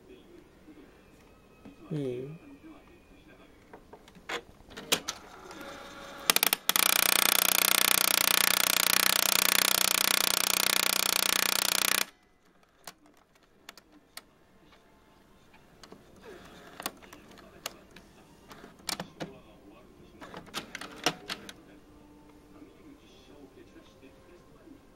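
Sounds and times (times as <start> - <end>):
printer mechanical grinding: 4.8 - 12.1, 16.2 - 17.6, 20.2 - 21.6
printer clicks: 6.3 - 12.1, 20.2 - 21.6.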